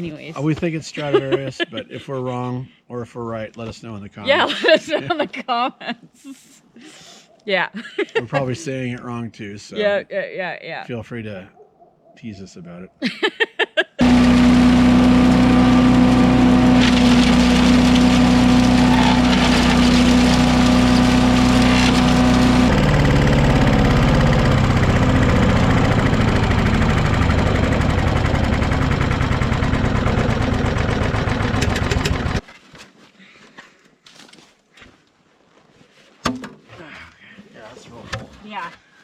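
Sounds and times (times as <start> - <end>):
motor engine running: 14.0 - 32.4.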